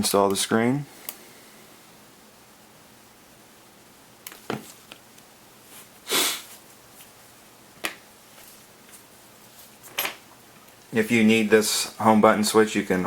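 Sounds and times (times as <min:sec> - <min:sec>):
person sniffing: 0:06.0 - 0:06.6.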